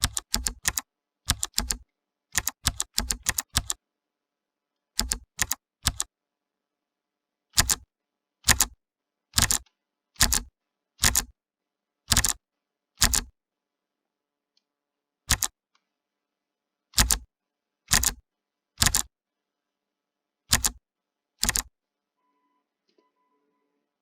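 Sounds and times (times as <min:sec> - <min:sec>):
clicky keyboard keys: 0:00.0 - 0:03.8, 0:05.0 - 0:06.1, 0:07.6 - 0:07.8, 0:08.5 - 0:08.8, 0:09.4 - 0:11.3, 0:12.1 - 0:12.4, 0:13.0 - 0:13.3, 0:15.3 - 0:15.6, 0:17.0 - 0:17.3, 0:17.9 - 0:18.2, 0:18.8 - 0:19.1, 0:20.5 - 0:20.8, 0:21.4 - 0:21.7.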